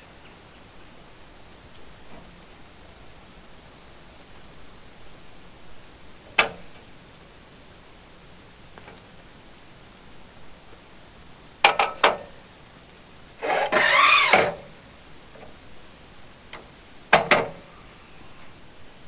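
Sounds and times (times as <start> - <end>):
sharp knocks and clanks on metal: 11.6 - 12.2, 17.1 - 17.6.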